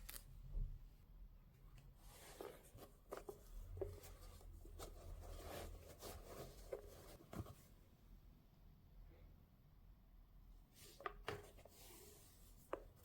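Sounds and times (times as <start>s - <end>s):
soft rustling of packaging: 0.0s - 0.6s, 1.6s - 7.9s.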